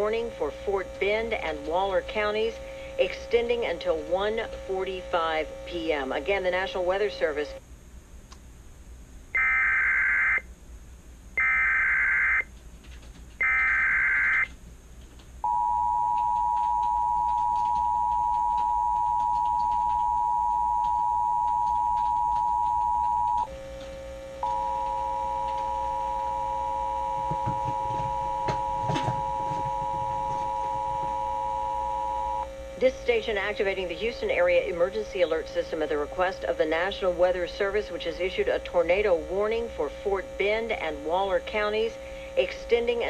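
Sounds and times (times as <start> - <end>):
hum: 0.0 - 43.0
screeching data bursts: 11.4 - 12.5, 13.4 - 14.5
steady two-tone attention signal: 15.4 - 23.5, 24.4 - 32.5.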